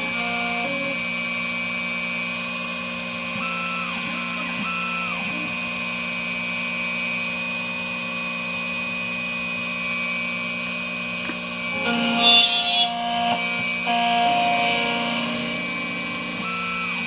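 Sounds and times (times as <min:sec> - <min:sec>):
key cutting machine motor hum: 0:00.0 - 0:17.0.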